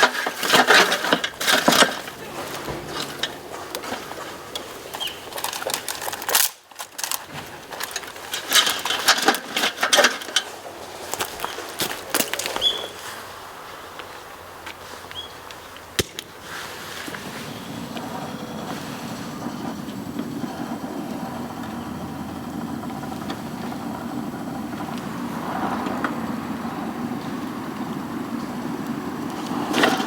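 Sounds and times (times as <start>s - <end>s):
fire burning with rushing roar: 0.0s - 30.0s
sharp crack of fire: 15.9s - 30.0s.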